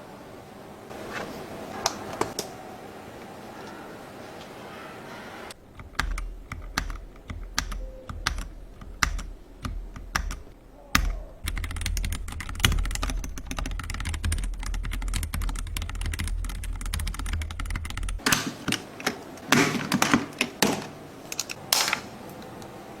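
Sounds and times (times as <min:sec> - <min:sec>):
mechanical keyboard typing: 0:05.6 - 0:21.6.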